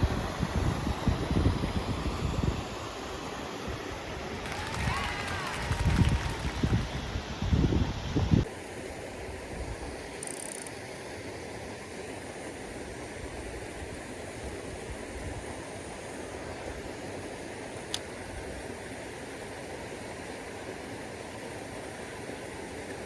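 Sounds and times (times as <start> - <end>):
outdoor background noise: 0.0 - 23.0
small click: 17.9 - 18.1.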